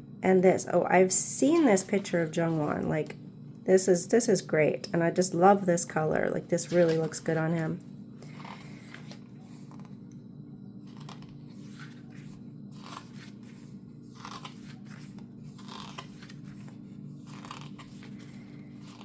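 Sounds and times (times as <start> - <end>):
steady low hum: 0.0 - 19.0
paper pages rustling: 6.6 - 7.4, 8.3 - 10.0, 10.9 - 19.0.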